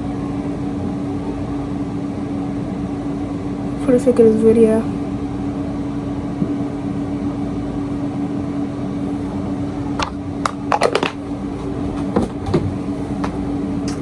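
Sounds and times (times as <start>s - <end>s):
appliance humming: 0.0s - 14.0s.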